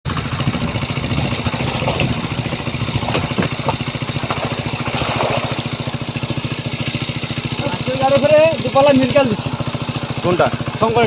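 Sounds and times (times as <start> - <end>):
engine idling with fast chugging: 0.0 - 11.0.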